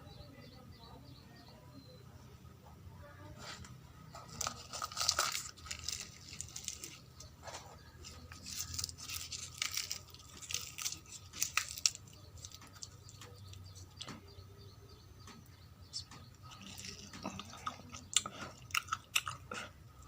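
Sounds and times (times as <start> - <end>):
fried bread tearing crackles: 4.2 - 14.2, 16.0 - 19.6.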